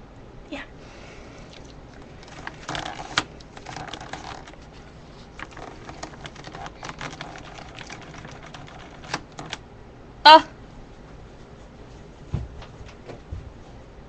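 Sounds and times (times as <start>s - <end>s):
keyboard clicks and taps: 5.4s - 9.6s.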